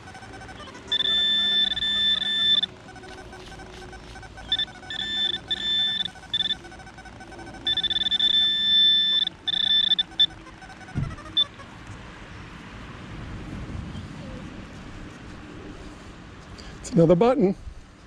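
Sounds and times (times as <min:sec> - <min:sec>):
metal detector tone: 0:00.0 - 0:11.6.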